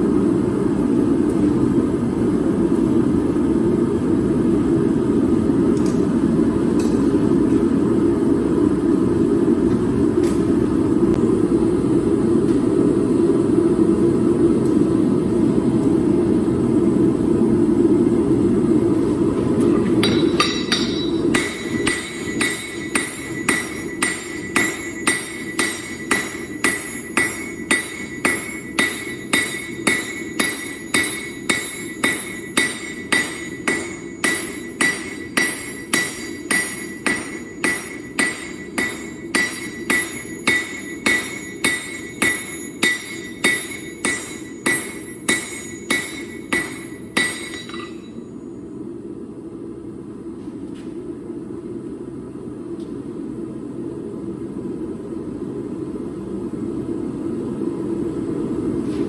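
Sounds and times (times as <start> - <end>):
hammer striking metal on anvil: 19.7 - 48.4.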